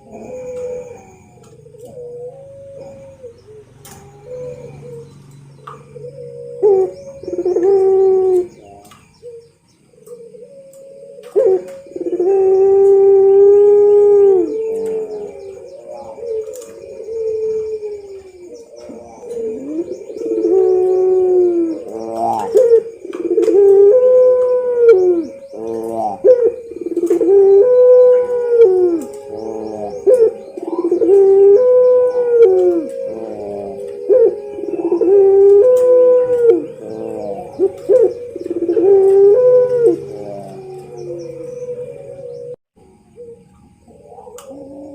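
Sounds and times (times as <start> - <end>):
turtle dove cooing: 0.0 - 44.9.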